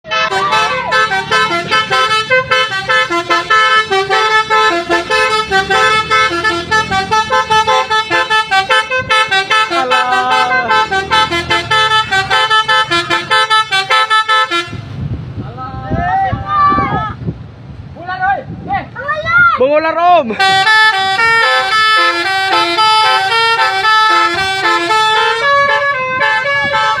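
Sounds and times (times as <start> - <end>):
multi-tone bus horn playing a tune: 0.0 - 15.0, 20.3 - 27.0.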